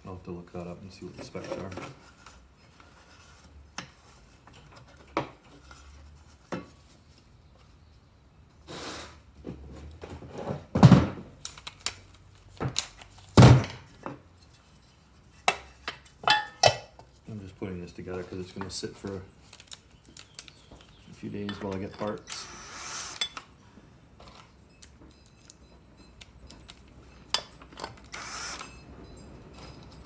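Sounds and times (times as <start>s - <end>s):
loud thunks: 10.8s - 11.3s, 13.4s - 13.8s
metal tools clinking on workbench: 21.4s - 22.4s, 24.2s - 30.0s.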